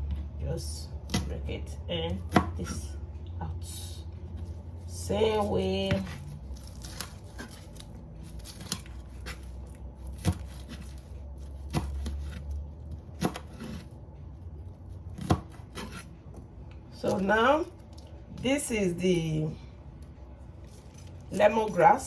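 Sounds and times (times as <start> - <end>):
onion cutting and peeling: 4.6 - 14.0, 14.6 - 16.4.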